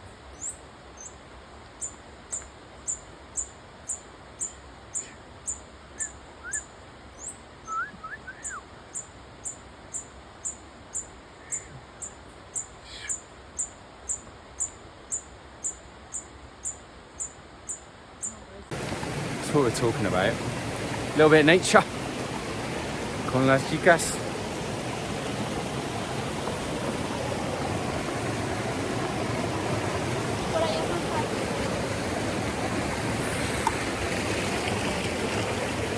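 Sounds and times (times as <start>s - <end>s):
bird whistled notes: 6.0s - 8.6s.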